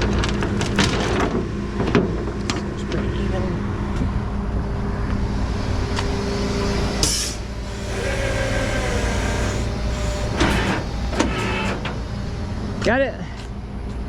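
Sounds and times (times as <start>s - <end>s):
truck engine running: 0.0s - 14.0s
air hiss: 6.0s - 11.1s.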